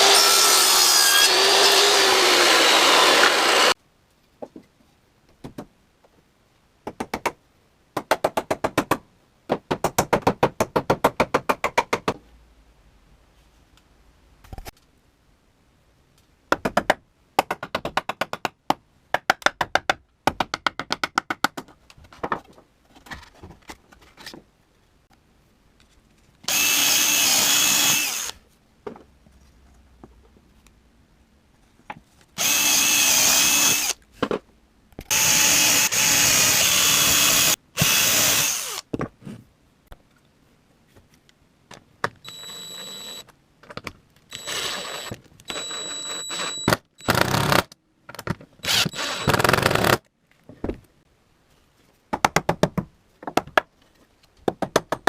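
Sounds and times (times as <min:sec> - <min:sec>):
power drill running: 0:00.0 - 0:03.8, 0:26.5 - 0:28.4, 0:32.4 - 0:34.0, 0:35.1 - 0:38.8, 0:44.3 - 0:47.6, 0:48.7 - 0:49.9.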